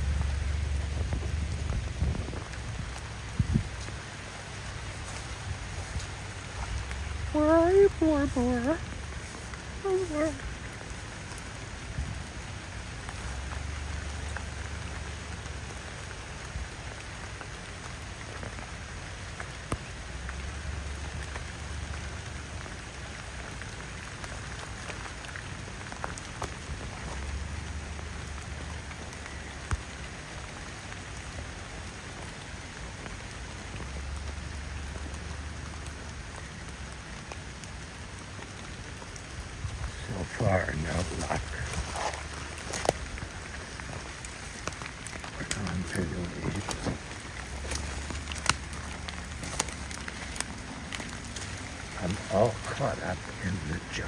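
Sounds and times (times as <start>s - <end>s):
low rumble: 0.0s - 9.8s
steady rain falling: 0.0s - 54.0s.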